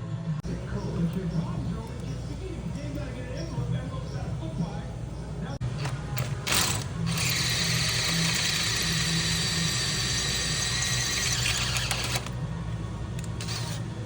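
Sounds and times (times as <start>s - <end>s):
electric drill grinding into metal: 5.6s - 12.4s, 13.2s - 14.0s.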